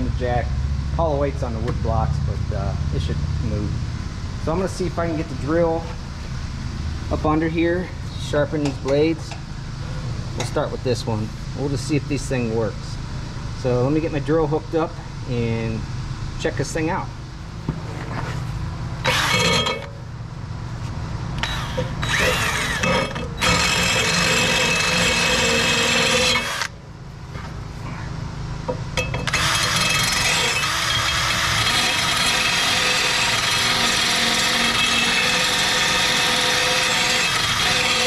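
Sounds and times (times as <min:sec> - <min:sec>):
drill grinding stone on metal blade: 0:19.0 - 0:19.9, 0:21.4 - 0:26.7, 0:29.3 - 0:38.0.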